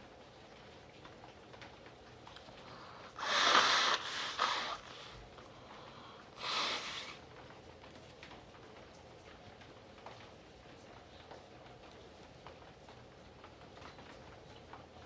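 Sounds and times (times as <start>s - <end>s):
man blowing his nose: 2.8s - 5.3s, 6.4s - 7.2s.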